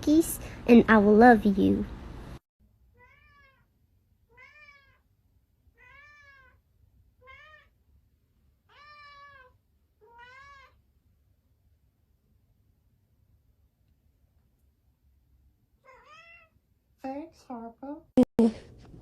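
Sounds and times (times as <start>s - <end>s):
cat meowing: 2.9s - 3.7s, 4.3s - 5.0s, 5.7s - 6.6s, 7.2s - 7.8s, 8.7s - 10.8s, 15.8s - 16.6s.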